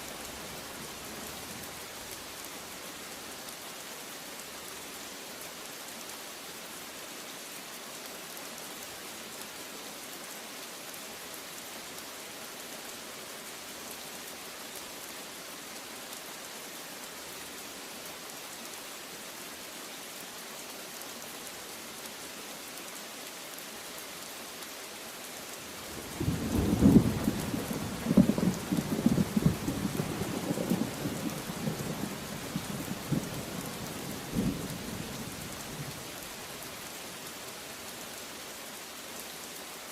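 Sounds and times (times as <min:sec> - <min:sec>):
heavy rain hissing: 0:00.0 - 0:05.6, 0:12.2 - 0:39.9
thunder rumbling: 0:26.2 - 0:31.8.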